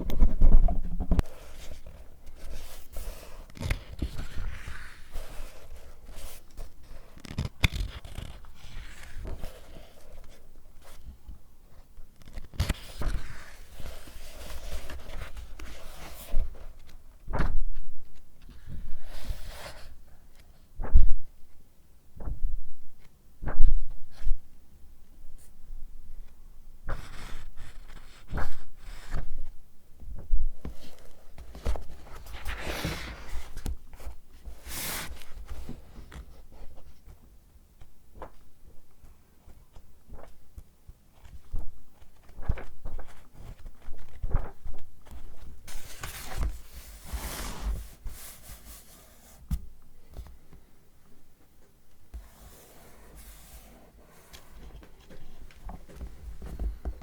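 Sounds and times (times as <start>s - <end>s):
paper crinkling and rustling: 0.1s - 18.8s, 39.5s - 40.4s, 41.1s - 48.9s.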